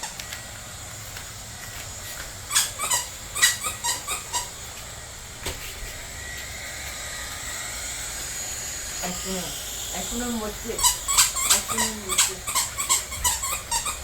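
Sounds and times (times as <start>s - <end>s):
squeaky dog toy squeaking: 2.5s - 4.6s, 10.7s - 14.0s.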